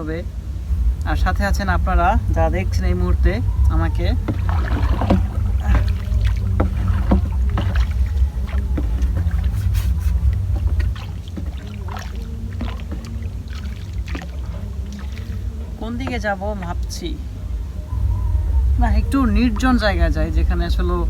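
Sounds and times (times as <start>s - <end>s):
boat engine low rumble: 0.0s - 21.0s
small water splashes: 1.7s - 21.0s
knocks on wooden boat: 3.6s - 16.6s.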